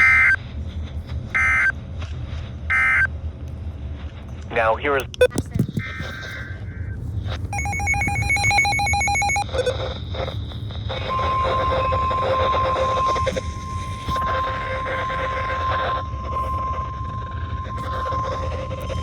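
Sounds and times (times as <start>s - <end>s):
buzzy digital data tones: 0.0s - 0.4s, 1.4s - 1.7s, 2.7s - 3.1s, 7.5s - 9.8s
steady alarm tone: 0.0s - 0.4s, 1.4s - 1.7s, 2.7s - 3.1s, 7.5s - 9.7s, 11.1s - 19.0s.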